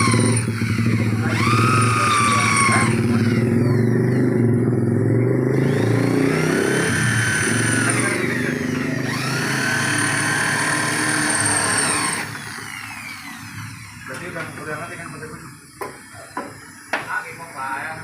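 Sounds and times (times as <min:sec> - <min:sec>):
vehicle engine revving: 0:00.0 - 0:14.1.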